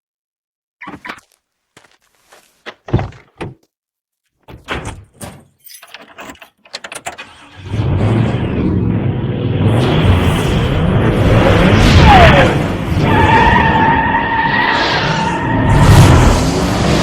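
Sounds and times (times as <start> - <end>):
car engine starting and running: 5.7 - 14.2.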